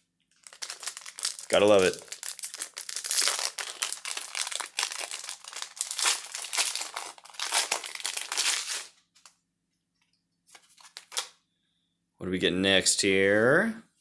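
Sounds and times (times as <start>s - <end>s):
foil wrapper crinkling: 0.3s - 9.3s, 10.5s - 11.3s.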